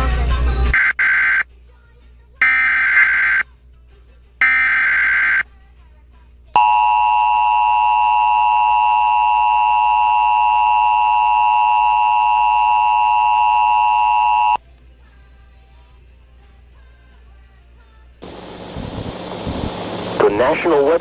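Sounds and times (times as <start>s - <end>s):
two-tone alert signal: 2.4s - 3.4s, 4.4s - 5.4s.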